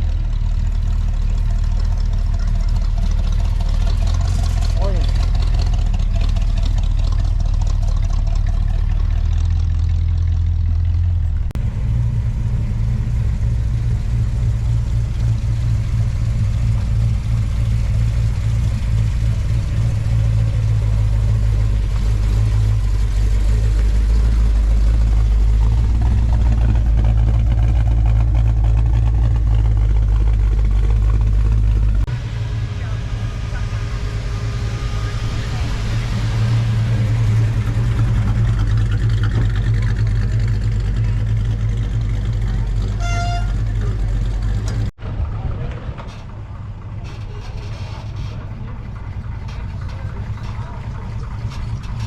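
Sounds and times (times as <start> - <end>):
car engine running: 0.0 - 52.0.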